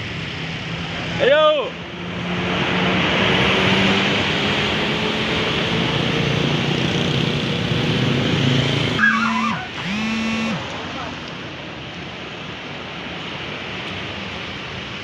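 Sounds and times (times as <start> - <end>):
tyre and road noise: 0.2 - 11.8
bus diesel engine: 3.2 - 11.2.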